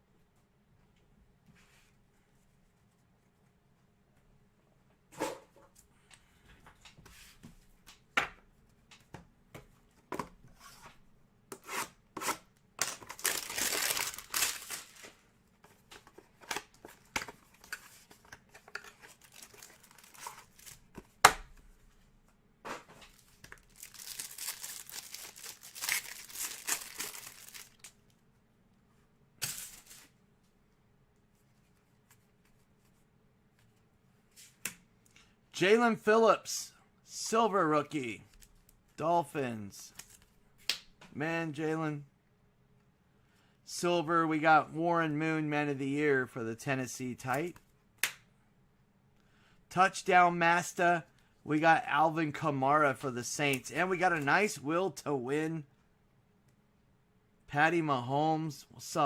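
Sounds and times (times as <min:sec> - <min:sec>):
card packaging tearing and crinkling: 0:12.8 - 0:15.2, 0:18.6 - 0:20.9, 0:23.1 - 0:28.0.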